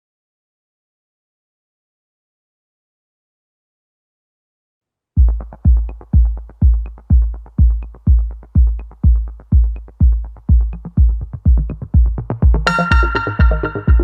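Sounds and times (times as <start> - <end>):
electronic music kick drum: 5.2 - 14.0
bright synth chord: 12.7 - 14.0.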